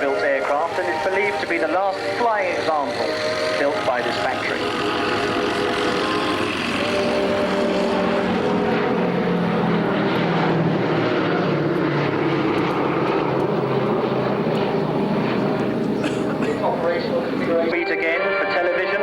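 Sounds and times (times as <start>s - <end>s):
propeller plane engines droning: 0.0s - 19.0s.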